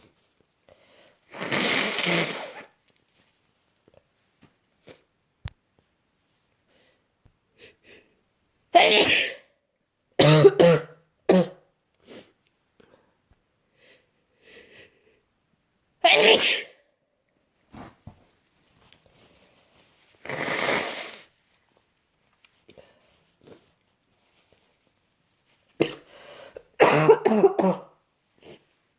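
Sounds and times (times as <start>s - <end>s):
person sneezing: 1.3s - 2.7s, 8.8s - 9.5s, 16.1s - 16.8s, 20.3s - 21.3s, 26.8s - 28.6s
harsh coughs: 8.8s - 9.4s, 10.2s - 11.6s, 16.1s - 16.7s, 26.8s - 28.0s
faint sniffs and breaths: 22.6s - 24.8s.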